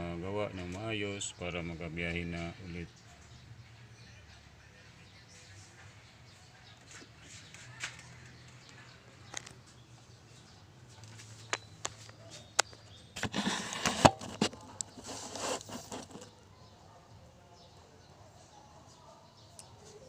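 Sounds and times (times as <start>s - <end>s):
rustling and scraping: 6.8s - 16.4s.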